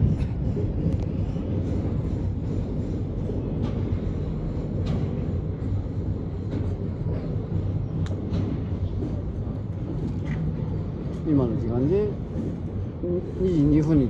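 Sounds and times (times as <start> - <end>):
freight train rumble: 0.0 - 14.0.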